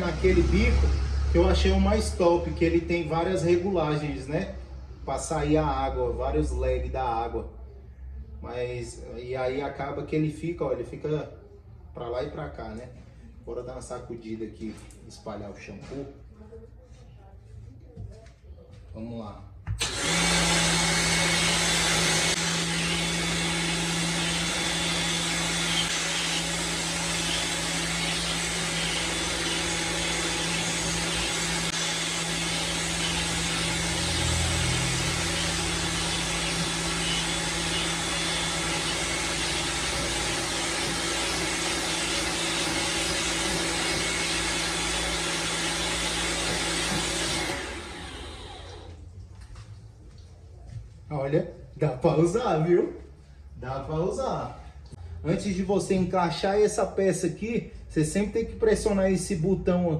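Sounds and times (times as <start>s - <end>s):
pressure washer motor hum: 19.8s - 49.0s.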